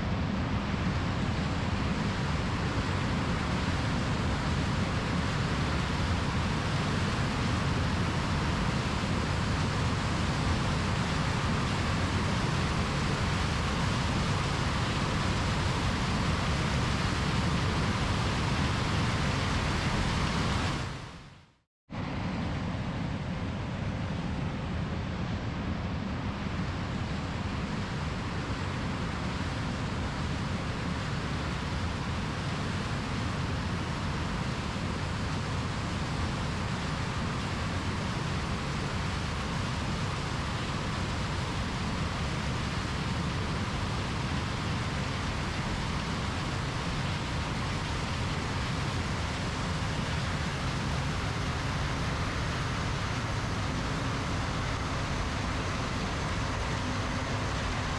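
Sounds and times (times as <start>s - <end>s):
combine harvester running: 49.5s - 57.9s.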